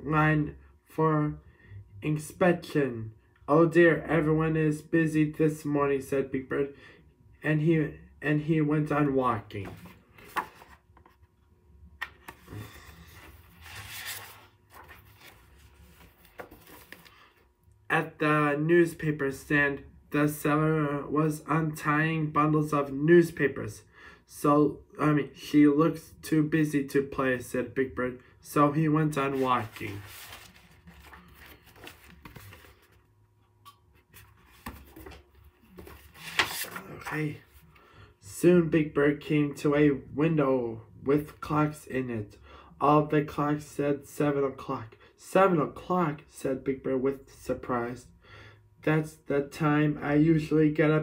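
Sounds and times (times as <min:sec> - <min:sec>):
faint paper handling: 0:09.5 - 0:11.3, 0:12.0 - 0:17.5, 0:29.2 - 0:33.1, 0:33.9 - 0:37.8
page turning: 0:09.6 - 0:11.3, 0:12.0 - 0:17.3, 0:29.3 - 0:33.1, 0:34.0 - 0:37.6.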